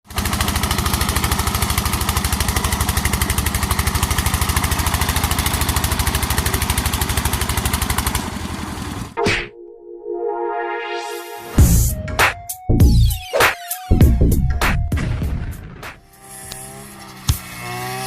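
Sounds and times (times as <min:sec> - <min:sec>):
machine engine running: 0:00.1 - 0:09.2, 0:15.2 - 0:18.0.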